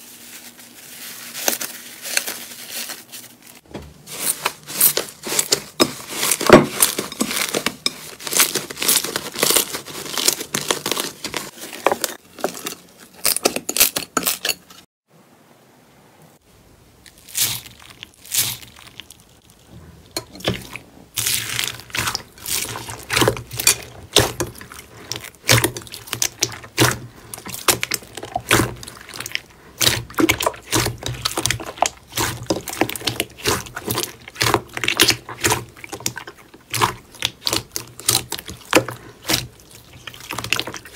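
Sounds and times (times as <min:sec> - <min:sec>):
slime squeezed crackling and popping: 0:21.2 - 0:40.9.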